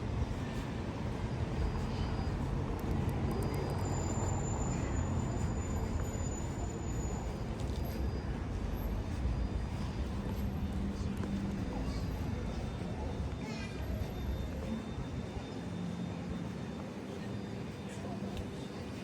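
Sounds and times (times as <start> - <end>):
faint high whine: 0.0 - 19.0
traffic engine rumble: 0.0 - 19.0.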